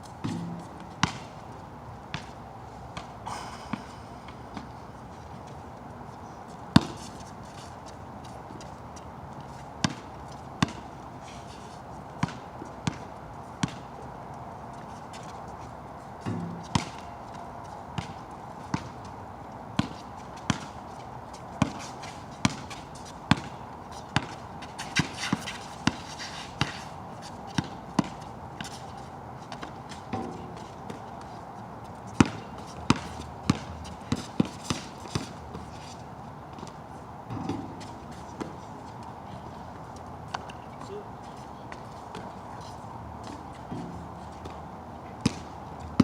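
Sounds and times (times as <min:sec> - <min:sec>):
basketball bouncing on wet court: 0:00.2 - 0:01.2, 0:12.2 - 0:13.0, 0:13.6 - 0:13.9, 0:16.3 - 0:17.1, 0:19.8 - 0:20.7, 0:27.6 - 0:28.2, 0:32.2 - 0:35.3, 0:45.2 - 0:46.0.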